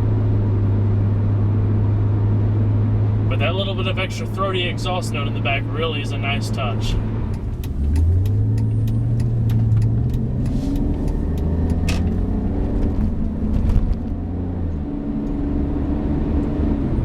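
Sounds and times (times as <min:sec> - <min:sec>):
car engine accelerating: 0:00.0 - 0:17.0
sharp clicks: 0:07.3 - 0:12.2.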